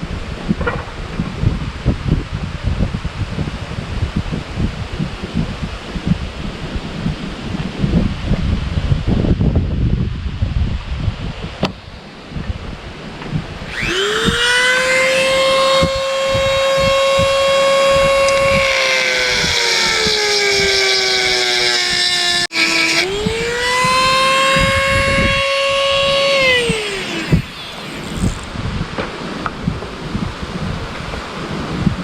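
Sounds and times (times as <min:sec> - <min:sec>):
rotary tool grinding metal: 0:13.6 - 0:28.6.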